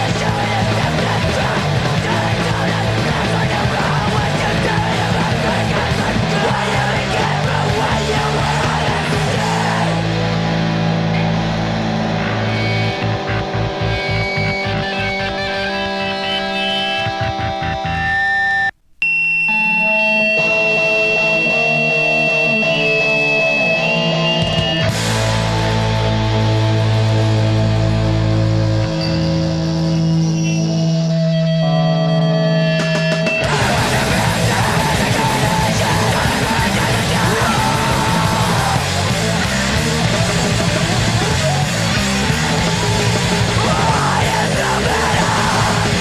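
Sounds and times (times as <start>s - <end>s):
shouted vocals: 0.0s - 10.3s, 33.4s - 46.0s
punk band playing: 0.0s - 18.2s, 19.9s - 31.1s, 32.1s - 46.0s
bass: 0.0s - 46.0s
distorted electric guitar: 0.0s - 46.0s
drums: 0.0s - 46.0s.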